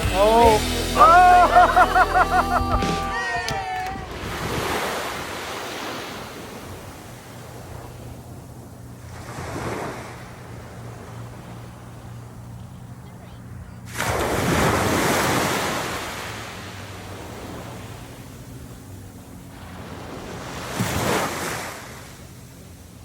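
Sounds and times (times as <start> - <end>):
surf: 0.0 - 23.0
waves breaking: 0.0 - 23.0
wind noise: 2.6 - 9.8.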